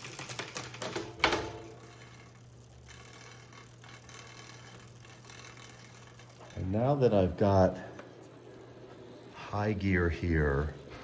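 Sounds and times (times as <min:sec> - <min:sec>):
bicycle chain shifting clicks: 0:00.0 - 0:09.1
bicycle chain running: 0:00.0 - 0:11.0
chain rubbing on derailleur: 0:01.8 - 0:09.4.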